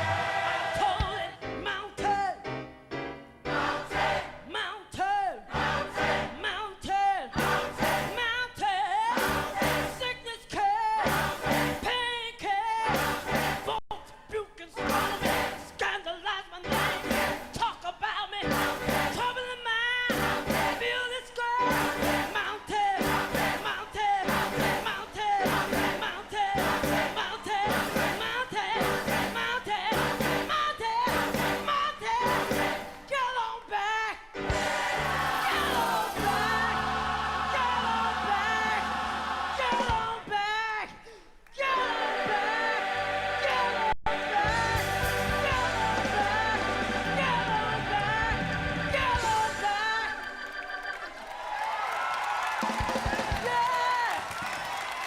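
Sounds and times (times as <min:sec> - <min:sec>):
gospel choir singing: 0:00.0 - 0:01.6, 0:03.4 - 0:13.8, 0:14.8 - 0:17.7, 0:18.4 - 0:40.8, 0:41.6 - 0:51.1
live band playing: 0:07.4 - 0:08.3, 0:09.1 - 0:10.0, 0:11.0 - 0:12.0, 0:12.9 - 0:13.8, 0:14.8 - 0:15.7, 0:16.7 - 0:17.6, 0:18.4 - 0:19.4, 0:20.0 - 0:21.0, 0:21.6 - 0:33.0, 0:34.4 - 0:37.2, 0:44.1 - 0:51.0.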